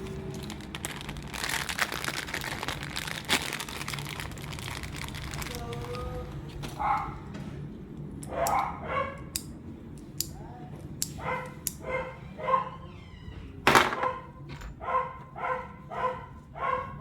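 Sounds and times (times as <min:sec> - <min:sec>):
small dog yapping: 0:08.3 - 0:09.3, 0:11.2 - 0:12.9.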